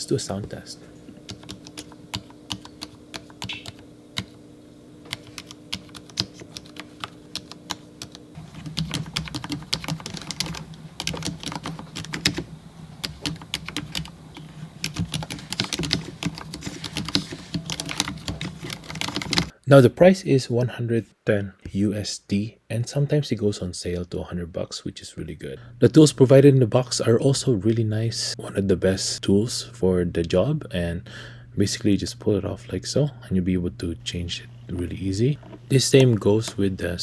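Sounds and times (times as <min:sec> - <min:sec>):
mechanical keyboard typing: 0:01.2 - 0:04.4, 0:05.0 - 0:19.5.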